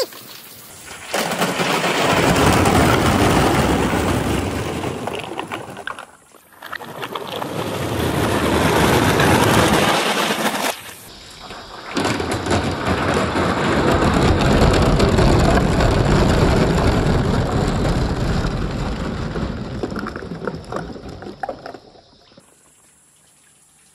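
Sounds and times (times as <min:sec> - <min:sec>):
marbles rolling down a marble run: 0:12.0 - 0:21.9.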